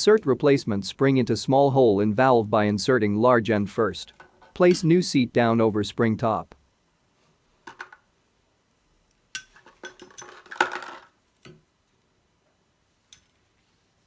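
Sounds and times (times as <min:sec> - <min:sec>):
metal and plastic parts clinking: 0:09.4 - 0:11.6.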